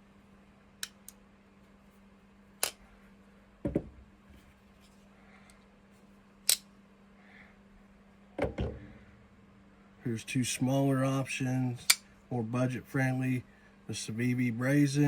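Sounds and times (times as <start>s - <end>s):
folding knife clicks: 6.5s - 6.7s.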